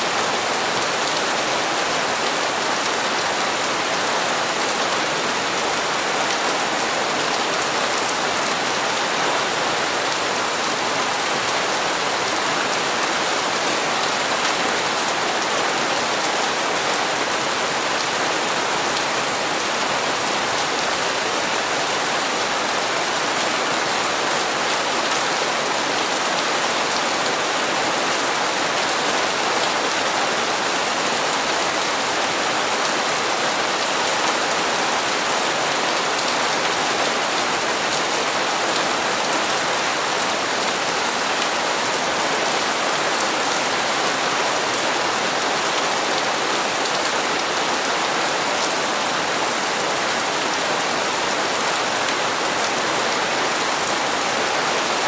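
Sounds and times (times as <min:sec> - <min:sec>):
rain on hard surfaces: 0:00.0 - 0:55.0.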